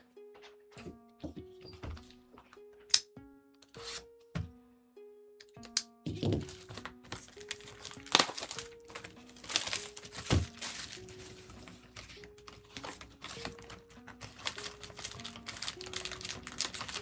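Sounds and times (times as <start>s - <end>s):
soft background music: 0.0s - 17.0s
plastic wrapping crinkling: 6.1s - 17.0s.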